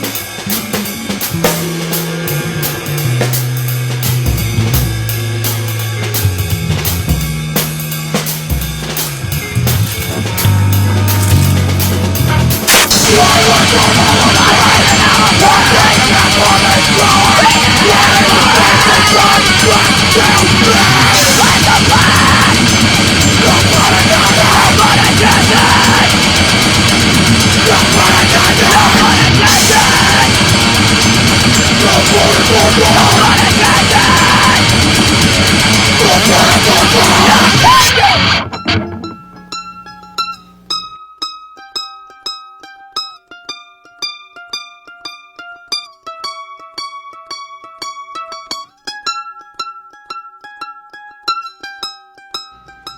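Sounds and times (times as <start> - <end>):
heavy metal music: 0.0 - 39.4
plucked string notes: 0.0 - 52.9.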